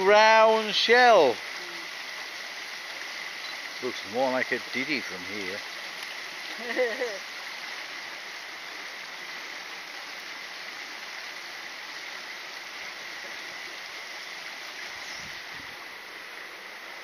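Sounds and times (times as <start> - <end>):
stream rushing: 0.0 - 17.0.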